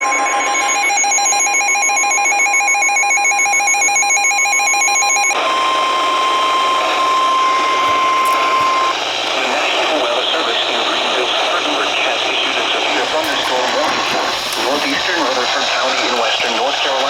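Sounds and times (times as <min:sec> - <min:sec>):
steady warning alarm tone: 0:05.9 - 0:09.0, 0:13.0 - 0:15.5.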